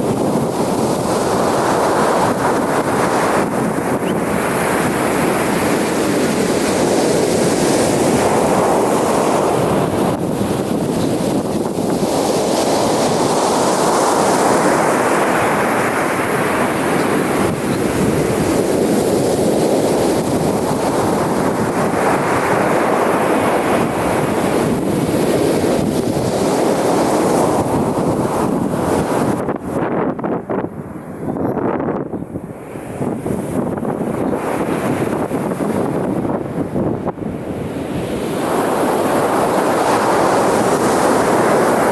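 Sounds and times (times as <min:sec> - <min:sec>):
ocean surf breaking on beach: 0:00.0 - 0:41.9.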